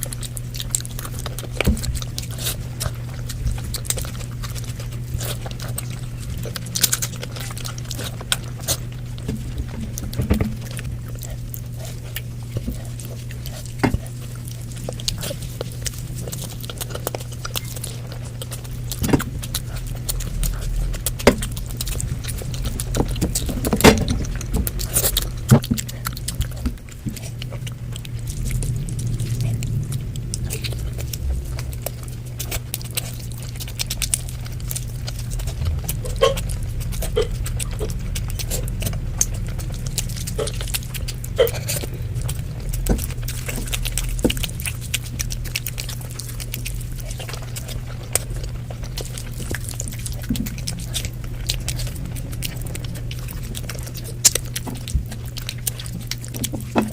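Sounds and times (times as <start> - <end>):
person chewing: 0.0 - 56.9
steady low hum: 0.0 - 56.9
wet mouth clicks and smacks: 48.8 - 56.9.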